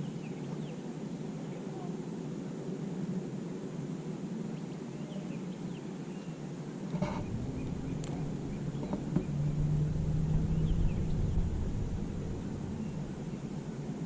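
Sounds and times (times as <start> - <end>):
low motor hum: 6.9 - 14.0
low rumble: 6.9 - 14.0
bird chirps: 7.0 - 13.7.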